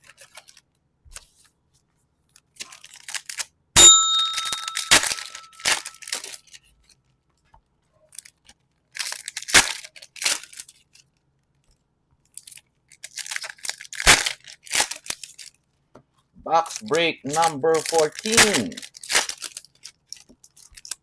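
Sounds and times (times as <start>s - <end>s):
foil wrappers tearing and crinkling: 2.6s - 3.5s, 8.2s - 10.9s, 12.4s - 15.5s, 16.6s - 21.0s
struck object ringing: 3.8s - 6.0s.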